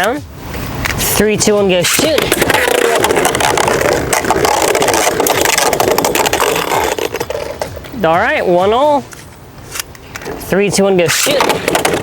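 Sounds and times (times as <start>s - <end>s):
spinning tops whirring and scraping: 1.8s - 8.0s.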